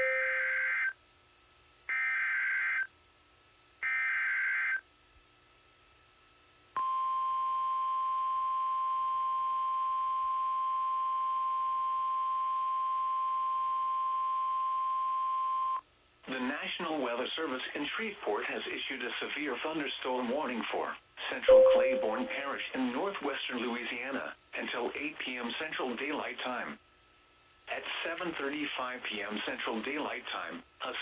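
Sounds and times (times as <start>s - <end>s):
steady single-pitched alert tone: 21.5s - 22.4s.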